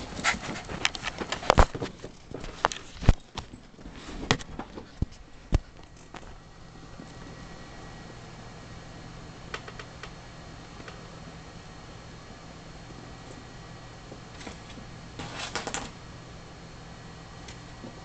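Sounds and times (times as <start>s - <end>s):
animals scuffling and thumping: 0.0s - 6.4s.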